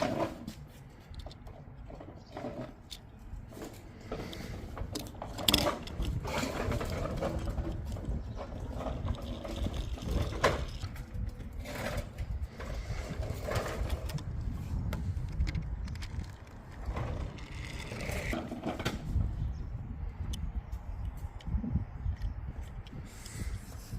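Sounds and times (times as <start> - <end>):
toy cars rattling down plastic ramp: 4.2 - 11.0.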